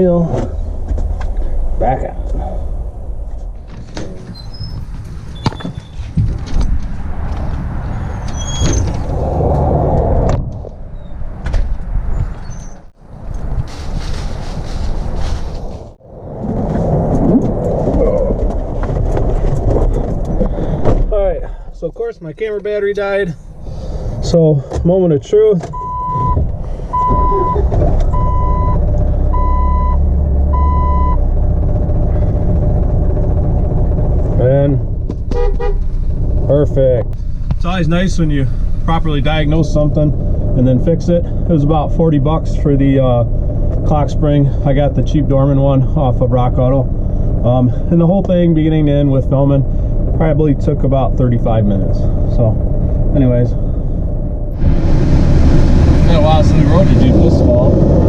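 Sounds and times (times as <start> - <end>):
steady low rumble: 0.0 - 58.0
dashboard warning chime beeping: 25.8 - 28.8, 29.4 - 31.2.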